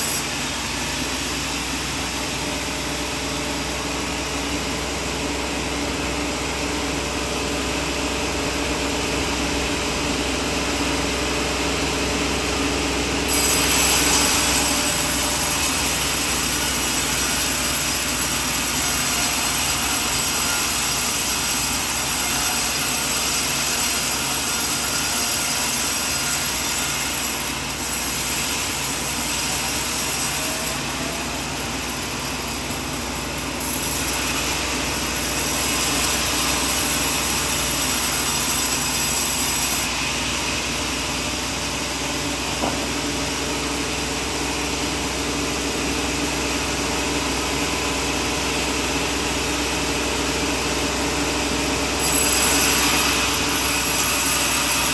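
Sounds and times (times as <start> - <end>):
saw cutting wood hiss: 0.0 - 2.4, 13.2 - 44.2, 51.7 - 54.9
sawmill machine running: 0.0 - 54.9.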